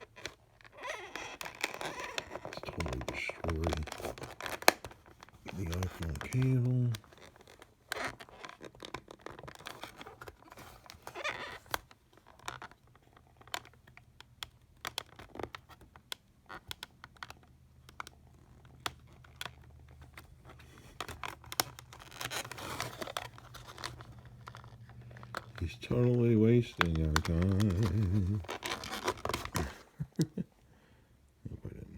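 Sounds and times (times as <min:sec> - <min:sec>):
faint low hum: 0:29.5 - 0:31.9.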